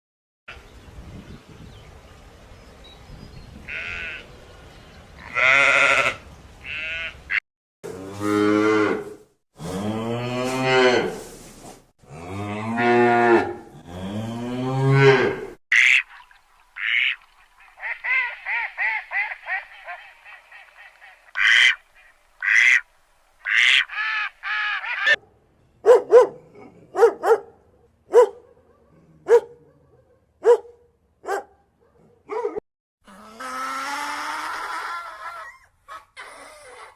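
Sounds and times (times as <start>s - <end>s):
cow mooing: 7.9s - 11.2s, 12.1s - 15.6s.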